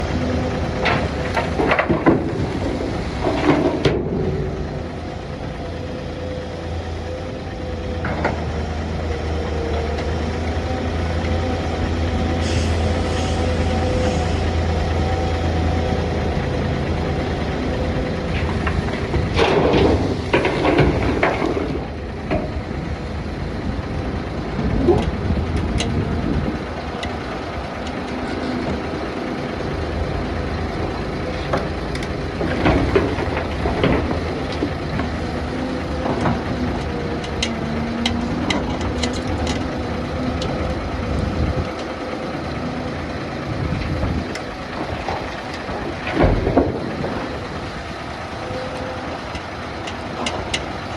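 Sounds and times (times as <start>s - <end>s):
clatter and scraping: 0.0s - 4.4s, 12.4s - 22.6s, 31.2s - 41.9s, 43.7s - 50.8s
excavator diesel engine running: 0.0s - 50.9s.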